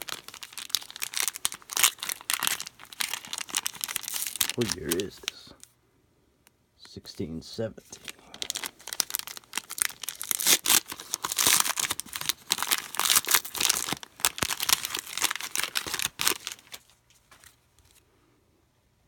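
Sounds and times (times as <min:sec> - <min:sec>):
wrappers tearing and crinkling: 0:00.0 - 0:05.6, 0:07.9 - 0:17.0.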